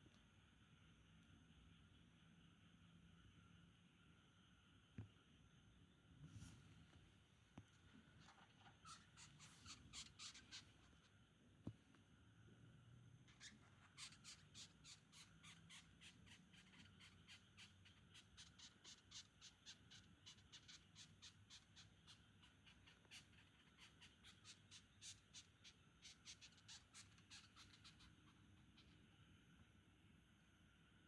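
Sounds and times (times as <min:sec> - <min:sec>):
beetle rasping squeaks: 0:08.6 - 0:11.0, 0:13.3 - 0:29.0.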